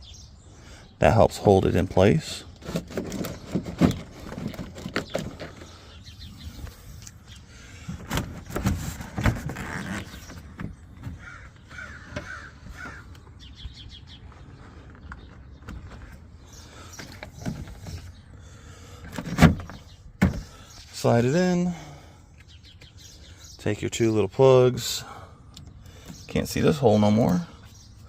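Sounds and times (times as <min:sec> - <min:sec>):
crow cawing: 0:11.2 - 0:13.2.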